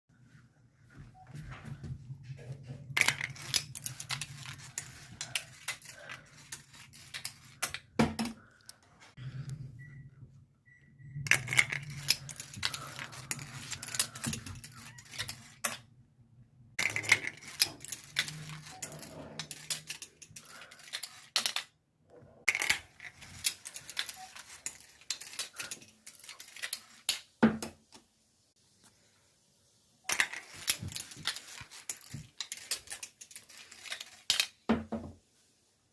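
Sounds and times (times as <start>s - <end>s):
marbles rolling and clattering: 2.8s - 7.9s, 11.2s - 15.9s, 16.8s - 21.7s, 22.4s - 27.2s, 30.0s - 34.6s.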